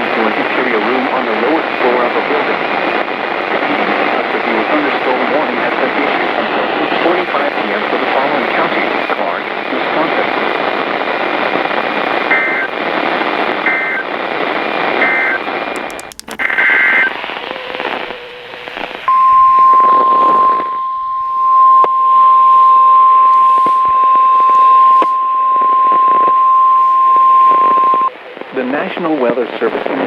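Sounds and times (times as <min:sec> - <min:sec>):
radio static hiss: 0:00.0 - 0:21.4, 0:22.4 - 0:30.0
steady warning alarm tone: 0:12.3 - 0:12.7, 0:13.6 - 0:14.1, 0:15.0 - 0:18.4.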